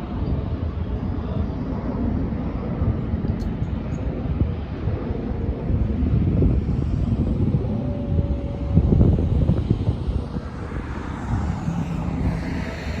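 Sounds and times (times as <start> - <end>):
jet engines rumbling: 0.0 - 13.0.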